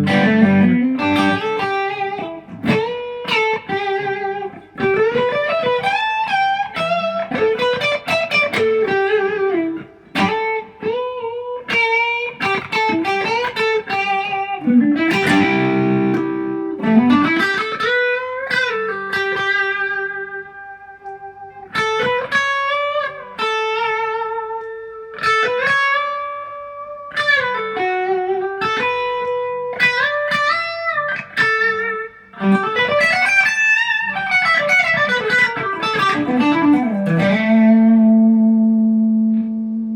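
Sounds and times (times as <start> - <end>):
electric guitar lead lines: 0.0 - 39.9
strummed guitar chord: 15.0 - 17.5.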